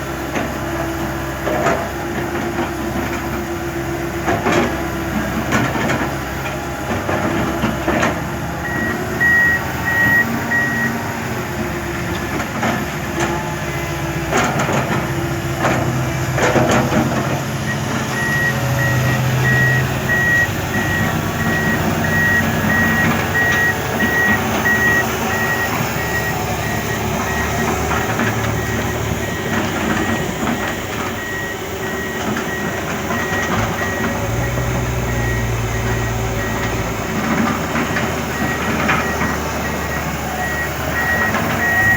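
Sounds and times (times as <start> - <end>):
diesel machinery running: 0.0 - 41.9
backup alarm beeping: 8.5 - 11.0, 17.6 - 41.9.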